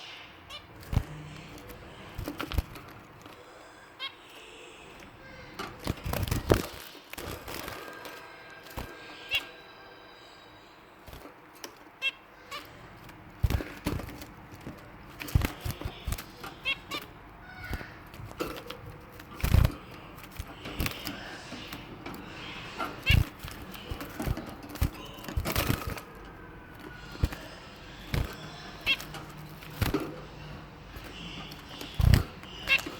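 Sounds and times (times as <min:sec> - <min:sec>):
finches tapping in cage: 0:00.8 - 0:03.4, 0:05.0 - 0:09.5, 0:11.0 - 0:32.9
wing flutters: 0:13.4 - 0:21.8, 0:22.9 - 0:30.1, 0:31.6 - 0:32.9.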